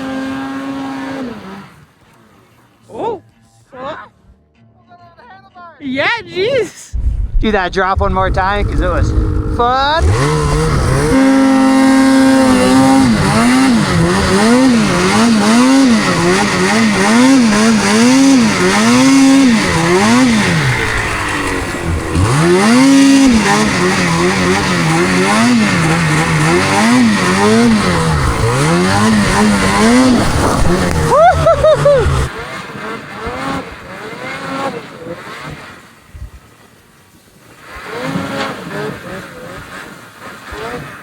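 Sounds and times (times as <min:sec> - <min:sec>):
snowmobile engine revving: 0:00.0 - 0:02.0, 0:06.9 - 0:36.0, 0:37.6 - 0:41.0.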